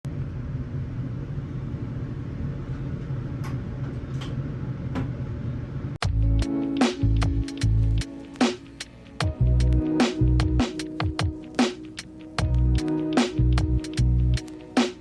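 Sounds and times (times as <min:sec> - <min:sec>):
music: 0:06.0 - 0:15.0.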